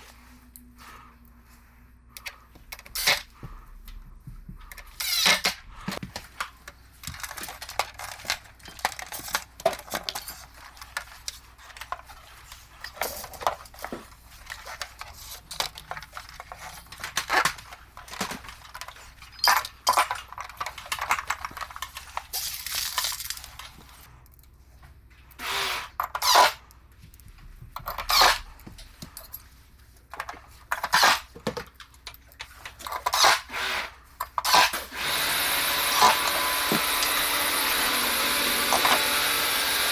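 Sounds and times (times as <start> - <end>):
clicks and clatter of tools: 4.7 - 25.4, 26.0 - 33.4.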